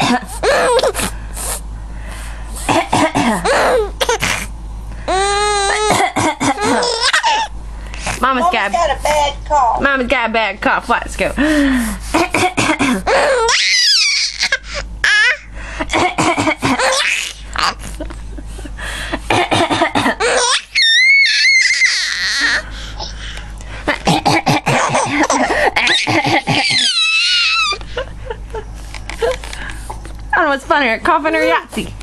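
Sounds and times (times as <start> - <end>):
woman coughing: 0.0 - 1.0, 2.6 - 4.2, 5.8 - 7.4, 12.1 - 13.4, 15.8 - 17.0, 19.2 - 20.4, 23.9 - 26.9
child laughing and squealing: 13.1 - 15.4, 20.2 - 22.6, 25.0 - 28.0.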